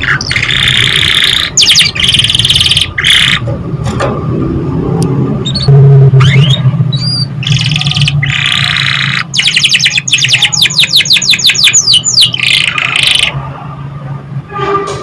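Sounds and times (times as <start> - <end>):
canary singing: 0.0 - 3.4, 5.4 - 13.4.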